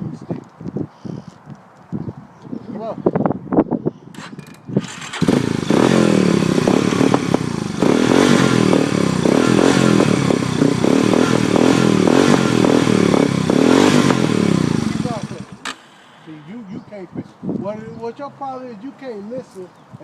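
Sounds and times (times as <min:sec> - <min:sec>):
engine revving: 0:04.2 - 0:16.4.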